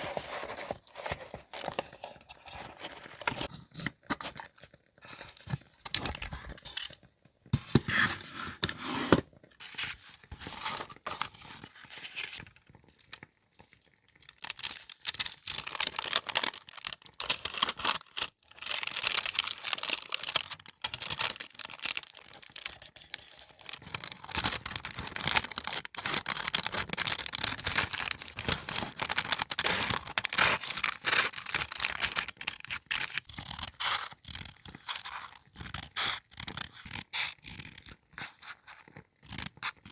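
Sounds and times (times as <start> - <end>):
paper tearing and crinkling: 14.3 - 34.1.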